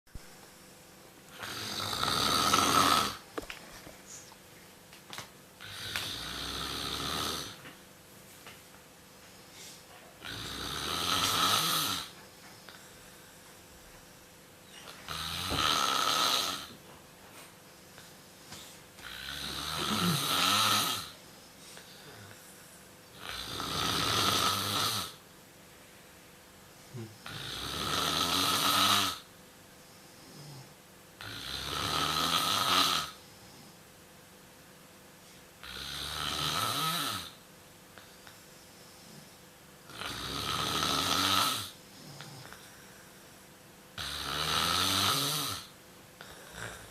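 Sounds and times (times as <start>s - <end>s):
pet snoring: 1.3s - 3.2s, 5.6s - 7.7s, 10.2s - 12.2s, 14.7s - 16.8s, 19.0s - 21.2s, 23.1s - 25.2s, 26.9s - 29.3s, 30.2s - 33.7s, 35.6s - 37.4s, 38.9s - 42.7s, 44.0s - 46.9s
quiet breaths: 9.1s - 15.6s, 16.5s - 28.0s, 29.2s - 31.4s, 33.0s - 34.0s, 37.3s - 44.0s, 45.6s - 46.9s.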